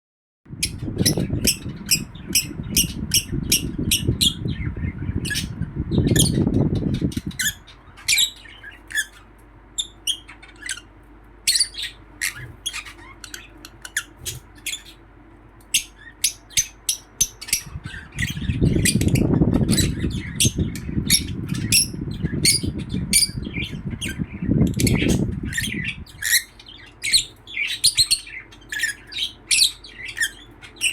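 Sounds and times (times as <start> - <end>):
loud low rumbling: 0.5 - 7.6, 17.6 - 26.4
lovebirds chirping and squawking: 0.5 - 30.9.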